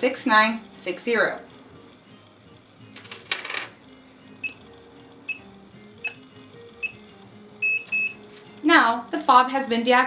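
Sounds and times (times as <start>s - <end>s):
keypad electronic beeps: 6.8s - 7.0s, 7.6s - 8.2s.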